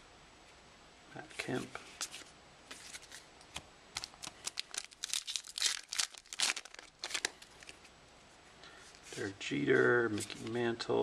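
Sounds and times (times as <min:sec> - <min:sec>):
foil wrapper crinkling and tearing: 0:04.0 - 0:07.8.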